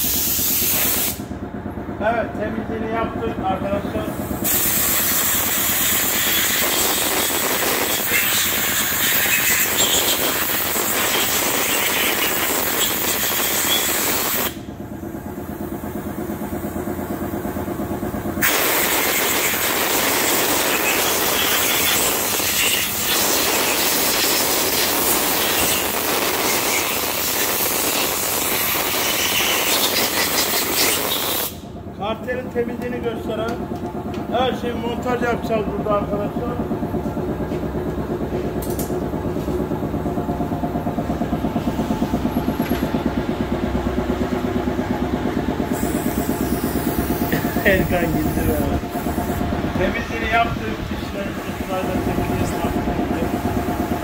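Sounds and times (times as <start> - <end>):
pressure washer jet hissing: 0.0 - 1.3, 4.2 - 14.6, 18.4 - 31.6, 45.7 - 50.3.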